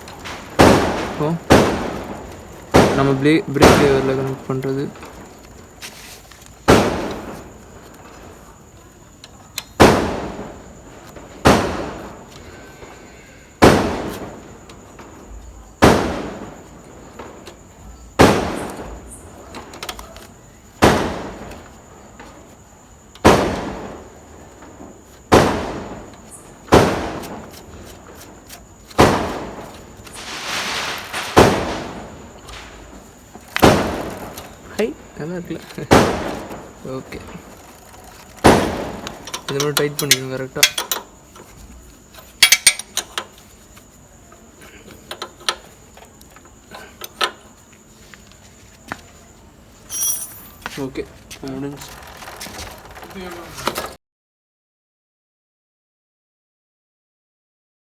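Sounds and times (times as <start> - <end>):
sharp metallic clacks: 38.4 - 41.1, 42.4 - 43.2.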